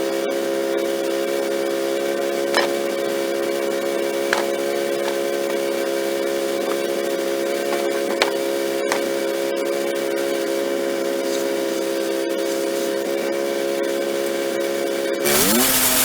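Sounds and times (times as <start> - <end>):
sawmill engine humming: 2.6 - 5.8.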